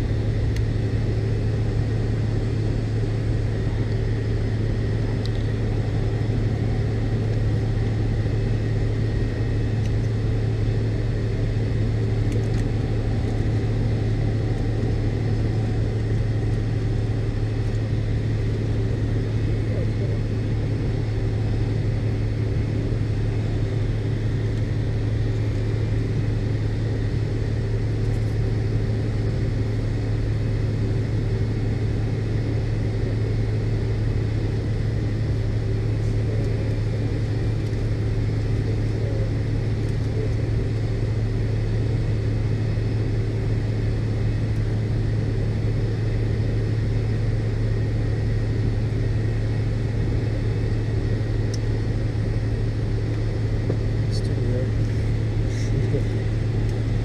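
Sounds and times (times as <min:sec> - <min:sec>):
deep cabin engine rumble: 0:00.0 - 0:57.0.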